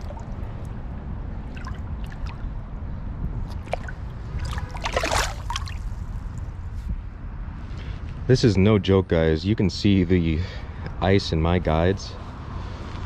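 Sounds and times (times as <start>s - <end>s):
water splashing and trickling: 0.0s - 2.7s, 3.4s - 6.6s
steady low rumble: 0.0s - 13.0s.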